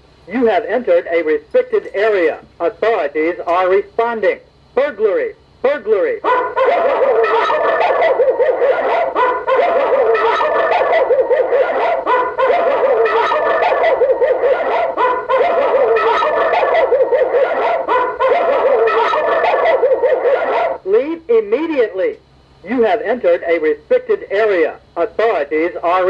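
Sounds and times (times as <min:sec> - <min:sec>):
warbling electronic alarm tone: 0:06.7 - 0:20.4.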